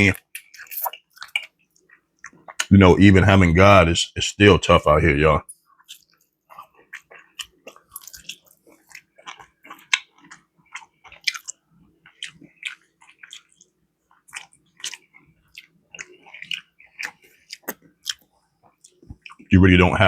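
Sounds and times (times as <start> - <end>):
person chewing food: 0.1 - 2.7, 5.4 - 19.5
wet mouth smacks and clicks: 14.4 - 19.4.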